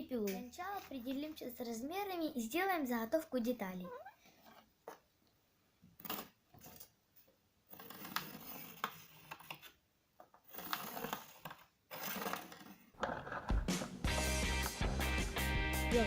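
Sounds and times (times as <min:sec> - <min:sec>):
background music with steady beat: 0:13.5 - 0:16.0.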